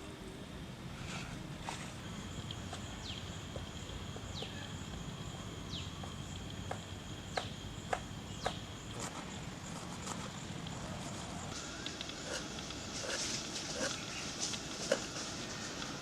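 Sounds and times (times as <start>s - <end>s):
bird chirping: 2.1s - 9.0s.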